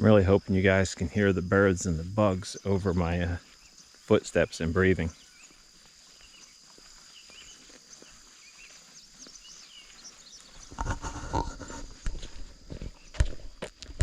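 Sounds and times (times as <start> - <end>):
insects droning: 0.0 - 14.0
bird chirps: 1.5 - 11.8
footsteps: 1.9 - 14.0.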